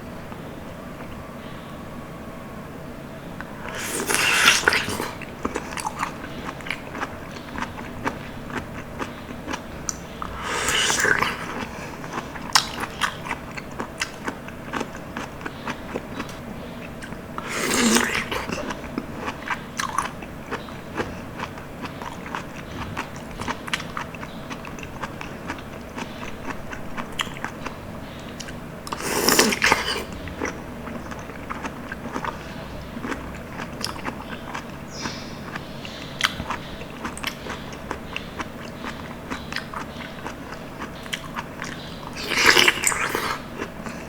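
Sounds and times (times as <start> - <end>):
wet sticky chewing: 3.4 - 44.0
loud mouth sounds: 3.7 - 6.0, 10.2 - 13.0, 17.4 - 18.8, 28.9 - 30.2, 42.1 - 44.0.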